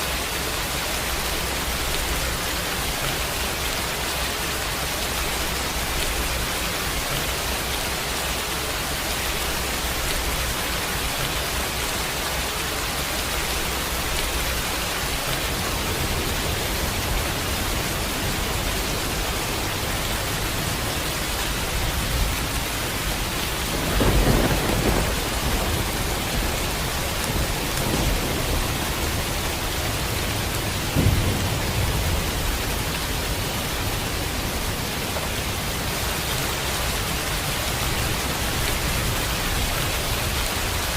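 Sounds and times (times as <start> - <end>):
steady rain: 0.0 - 40.9
thunder rumbling: 13.2 - 40.9.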